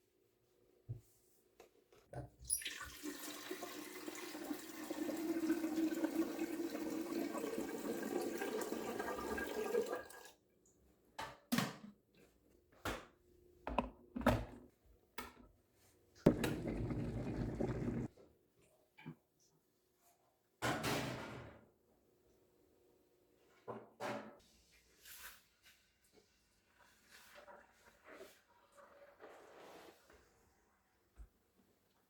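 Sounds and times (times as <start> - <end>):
tap water filling container: 2.5 - 10.3, 16.3 - 18.1.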